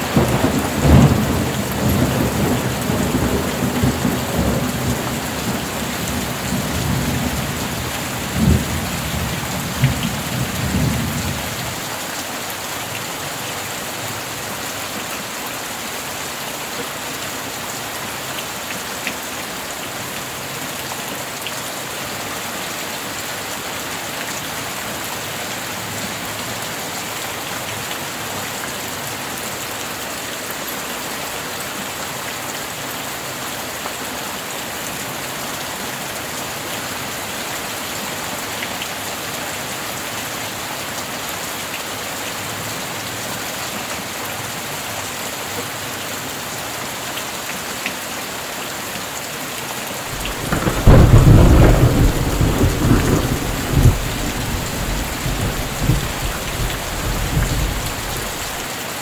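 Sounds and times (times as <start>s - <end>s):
rolling thunder with cracks: 0.0s - 11.5s, 50.1s - 58.6s
steady rain hissing: 0.0s - 29.8s, 34.6s - 59.0s.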